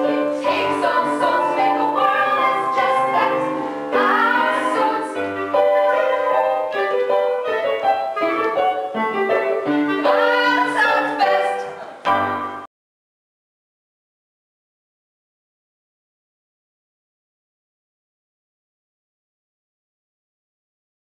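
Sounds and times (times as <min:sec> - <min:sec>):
voices singing: 0:00.0 - 0:06.3, 0:10.0 - 0:12.2
piano accompaniment: 0:00.0 - 0:12.7.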